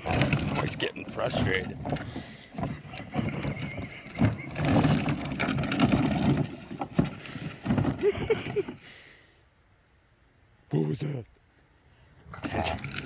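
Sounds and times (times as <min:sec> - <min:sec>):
toy car knocking and scraping: 0:00.0 - 0:08.8, 0:12.6 - 0:13.0.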